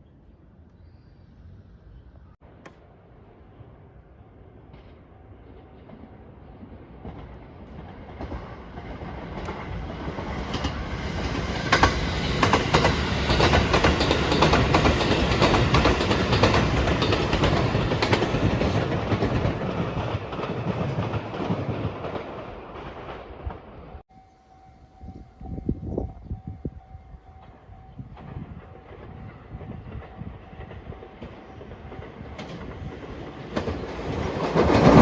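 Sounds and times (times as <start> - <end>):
passenger train passing: 1.4 - 35.0.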